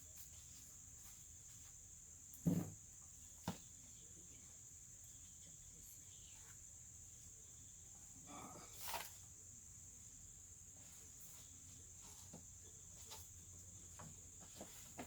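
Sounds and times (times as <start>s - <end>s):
faint high-pitched hiss: 0.0s - 15.0s.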